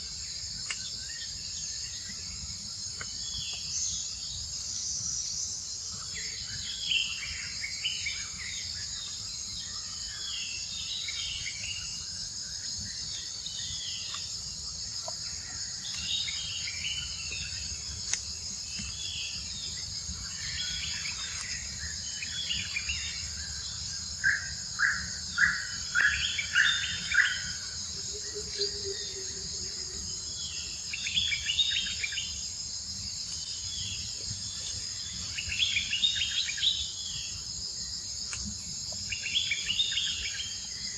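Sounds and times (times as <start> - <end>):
insects droning: 0.0 - 40.9.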